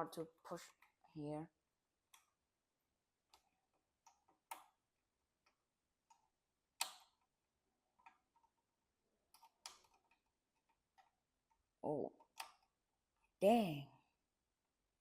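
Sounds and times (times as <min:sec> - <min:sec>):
plastic connector clicks and taps: 0:06.8 - 0:07.1.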